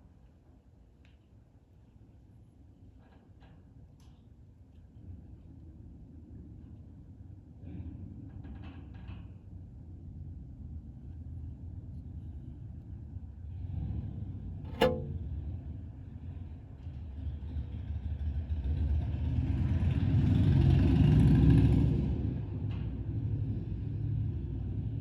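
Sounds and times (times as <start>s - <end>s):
sharp knock: 14.7s - 15.2s.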